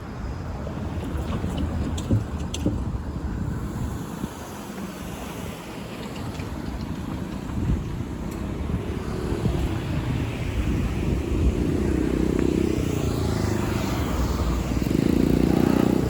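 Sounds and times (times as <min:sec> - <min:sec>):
vehicles driving past: 0:00.0 - 0:16.0.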